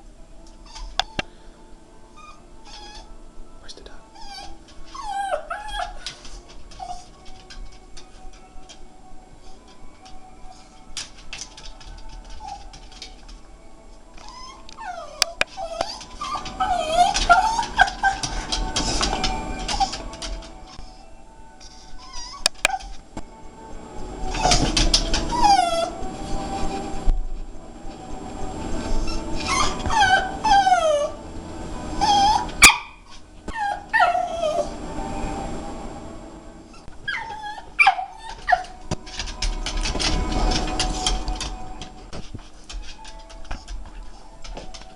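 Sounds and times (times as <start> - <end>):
dog whining: 0.6 - 1.3, 2.2 - 3.2, 4.1 - 8.5, 14.2 - 23.1, 24.2 - 26.9, 28.8 - 31.3, 31.9 - 34.8, 36.7 - 38.9.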